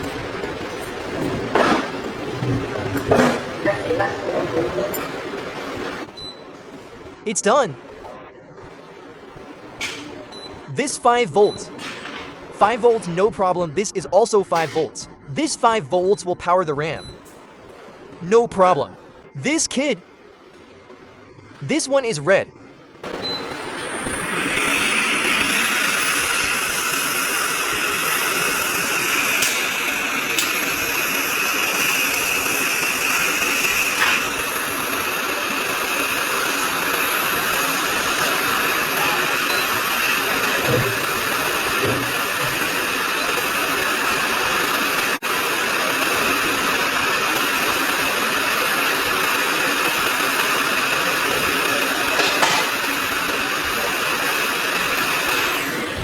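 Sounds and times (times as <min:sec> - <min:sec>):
hot air station hissing: 0:23.0 - 0:56.0.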